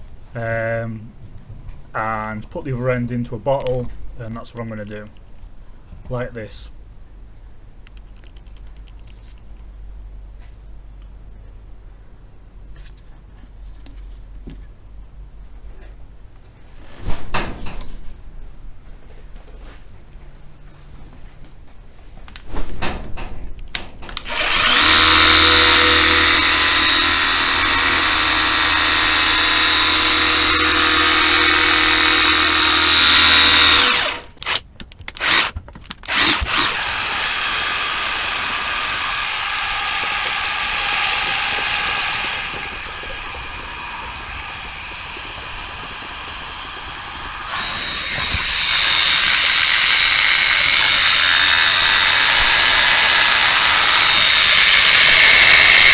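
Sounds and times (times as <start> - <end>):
electric pump running: 24.2 - 34.6, 35.2 - 55.9.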